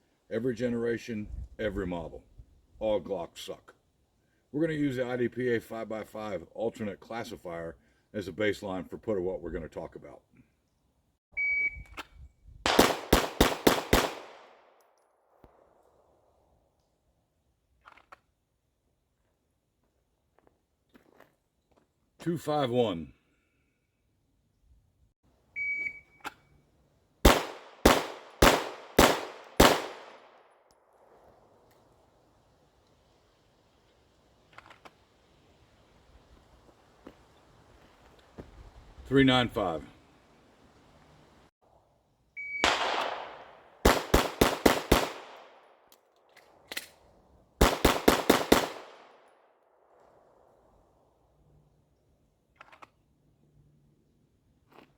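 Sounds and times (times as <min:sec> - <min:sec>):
shot timer beep: 0:11.4 - 0:11.9, 0:25.6 - 0:26.2
pistol shots with echo: 0:12.7 - 0:14.7, 0:27.2 - 0:30.4, 0:42.6 - 0:45.7, 0:47.6 - 0:49.2.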